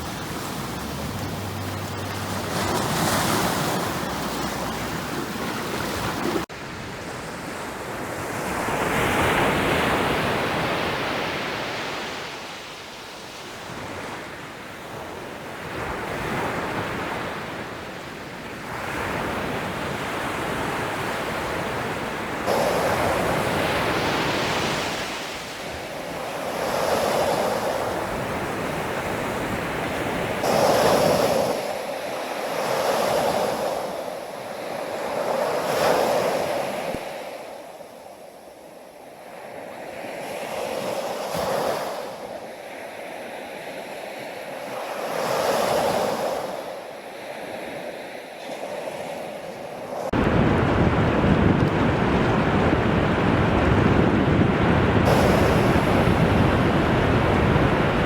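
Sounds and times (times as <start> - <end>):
ocean waves breaking: 0.0 - 17.8, 18.7 - 58.0.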